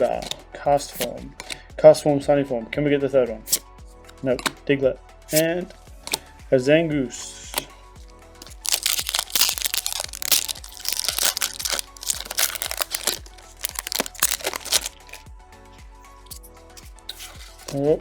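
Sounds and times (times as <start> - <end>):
background music: 0.0 - 18.0
foil wrapper crinkling: 8.4 - 15.2, 16.3 - 17.9.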